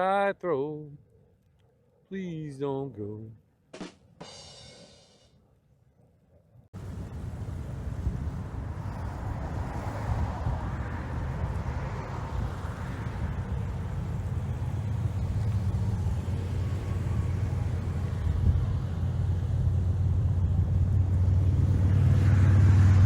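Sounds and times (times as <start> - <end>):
low engine rumble: 6.8 - 23.0.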